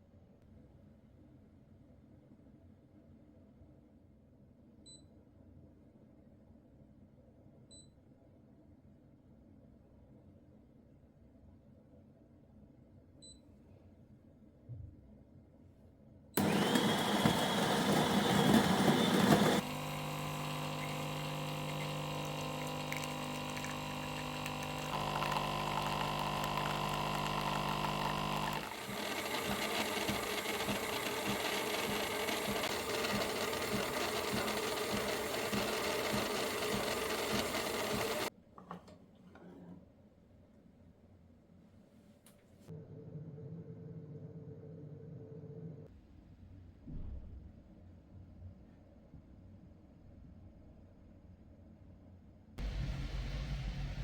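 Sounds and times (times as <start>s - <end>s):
small electric motor running: 16.4s - 38.3s.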